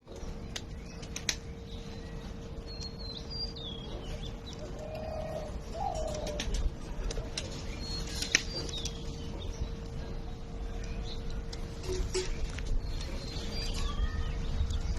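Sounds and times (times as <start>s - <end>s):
steady hum and low rumble: 0.0s - 14.9s
sharp clicks: 0.5s - 1.4s
pigeons cooing: 3.8s - 10.5s
high bird chirps: 10.9s - 14.9s.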